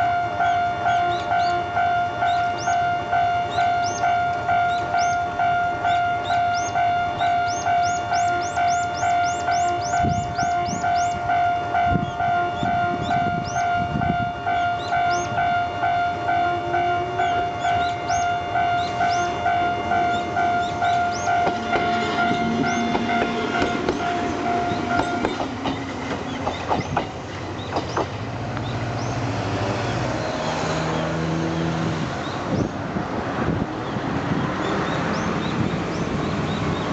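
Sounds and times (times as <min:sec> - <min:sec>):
level crossing alarm: 0:00.0 - 0:25.8
train motor hum: 0:18.8 - 0:36.9
train wheel thumps: 0:21.4 - 0:28.2.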